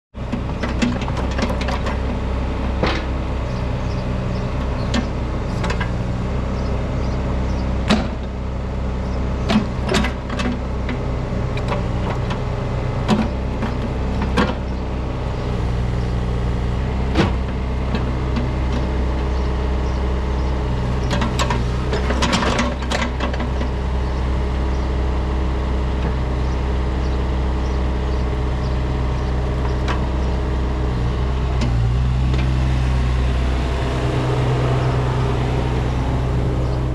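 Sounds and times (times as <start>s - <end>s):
excavator diesel engine running: 0.2s - 36.9s.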